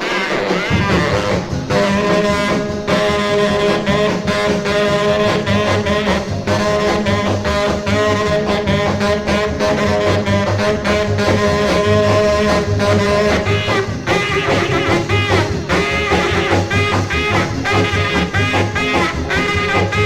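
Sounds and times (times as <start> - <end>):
brass riffing: 0.0 - 20.0
saxophone: 0.0 - 20.0
steady beat: 0.6 - 20.0
walking bass: 0.6 - 20.0.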